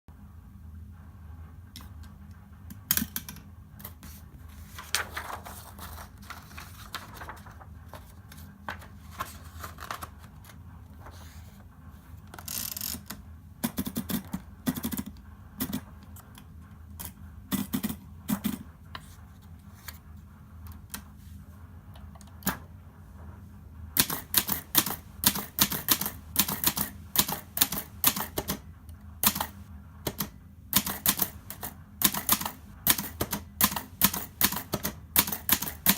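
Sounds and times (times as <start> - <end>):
steady low hum: 0.1 - 35.9
typewriter key strikes: 30.1 - 35.9.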